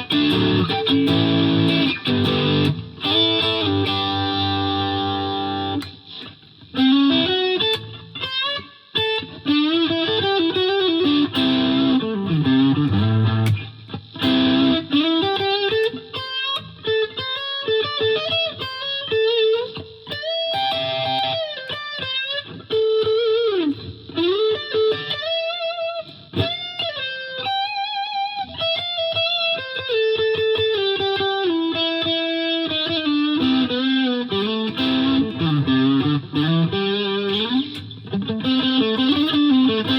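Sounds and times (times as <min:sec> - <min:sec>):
overdriven electric guitar licks: 0:00.0 - 0:39.9.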